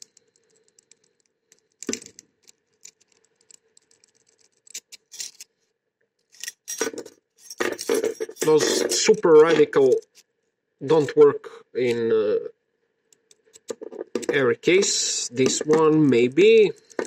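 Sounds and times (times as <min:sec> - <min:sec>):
key rattling in a lock: 0:00.0 - 0:05.5, 0:06.2 - 0:10.3, 0:15.5 - 0:17.0.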